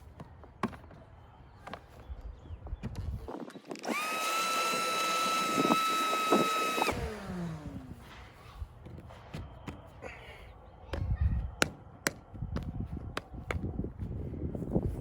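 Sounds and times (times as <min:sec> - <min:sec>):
power cutting tool whining: 0:03.8 - 0:07.8.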